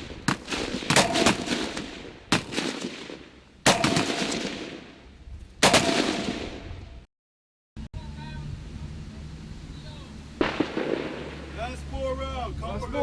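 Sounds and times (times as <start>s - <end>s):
rifle shots echoing: 0.0s - 6.6s, 10.4s - 11.7s.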